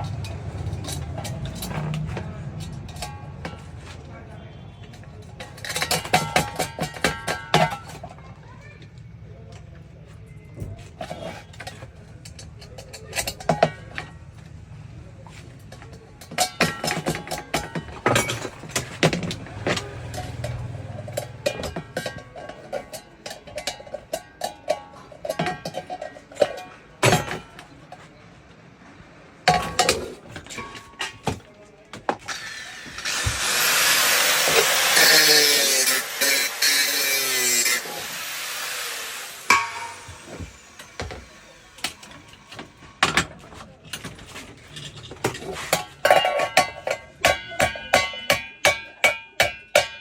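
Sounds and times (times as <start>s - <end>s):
hand tools clinking on metal: 0.0s - 4.1s, 4.8s - 8.2s, 15.6s - 28.1s, 29.5s - 50.0s.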